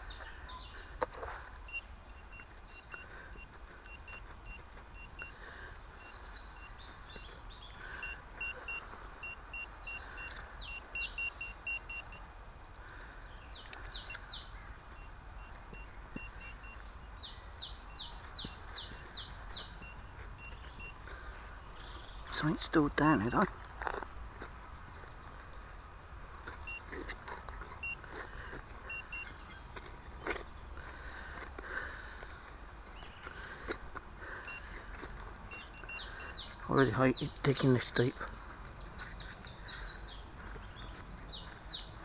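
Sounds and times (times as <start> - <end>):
birds chirping: 0.0 - 23.7, 24.5 - 42.0
short electronic beeps: 1.6 - 5.4, 7.9 - 12.2, 14.9 - 16.9, 18.9 - 21.0, 22.3 - 23.5, 26.6 - 26.9, 27.8 - 28.1, 28.8 - 29.6, 34.4 - 34.7, 35.4 - 38.1.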